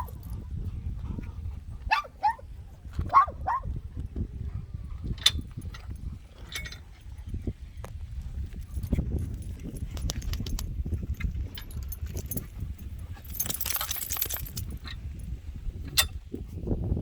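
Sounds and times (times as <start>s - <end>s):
leash and collar jingling: 0.0s - 16.6s.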